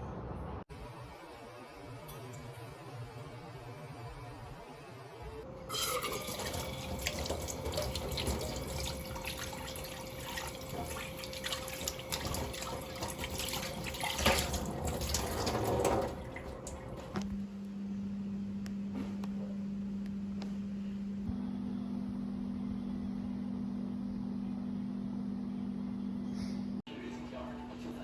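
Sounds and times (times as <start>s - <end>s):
steady low hum: 2.7s - 28.0s
tap water running into sink: 5.7s - 17.3s.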